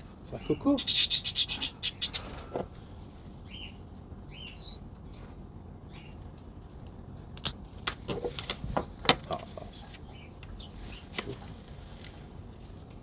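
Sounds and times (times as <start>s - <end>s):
parrot chirping: 0.4s - 2.3s, 4.3s - 4.9s.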